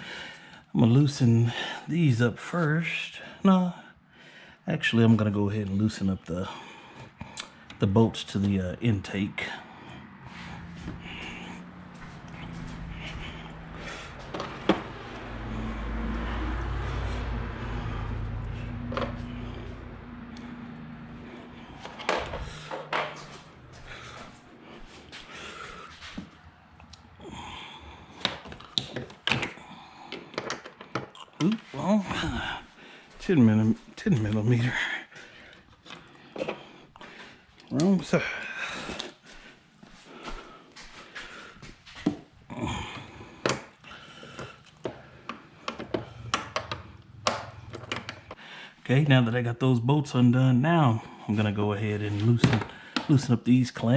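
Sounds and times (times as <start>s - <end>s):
low steady hum: 6.5s - 27.8s.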